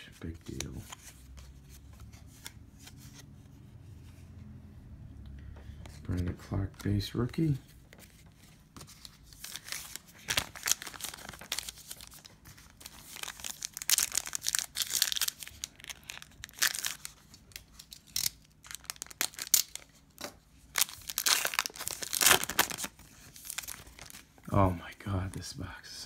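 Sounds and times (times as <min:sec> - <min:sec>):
card wrappers tearing and crinkling: 0:08.8 - 0:20.1, 0:20.7 - 0:24.4.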